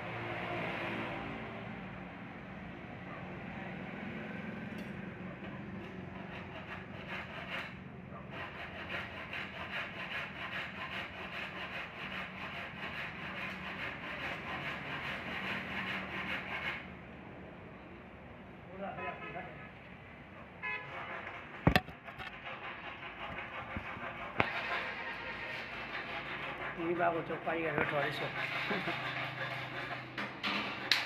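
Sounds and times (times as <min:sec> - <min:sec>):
hand tool rasping on wood: 0:05.9 - 0:16.9, 0:20.9 - 0:31.0
rubbing on wood: 0:06.0 - 0:16.9, 0:20.9 - 0:30.2.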